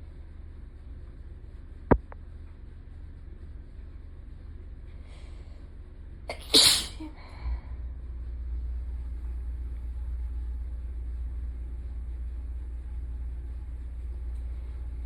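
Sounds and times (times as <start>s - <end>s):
steady low rumble: 0.0s - 15.0s
person sneezing: 6.3s - 7.1s.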